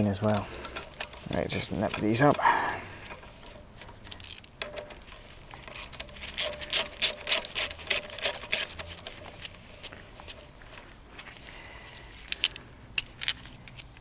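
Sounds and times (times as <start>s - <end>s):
ratchet wrench clicking: 5.7s - 9.0s.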